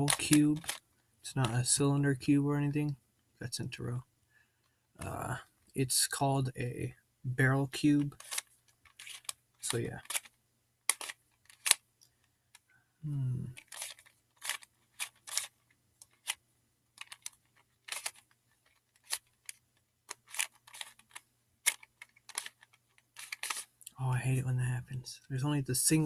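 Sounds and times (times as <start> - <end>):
puzzle cube layers clicking: 0.0 - 0.8, 1.4 - 1.7, 7.7 - 10.3, 10.9 - 11.8, 13.1 - 16.4, 17.0 - 23.7.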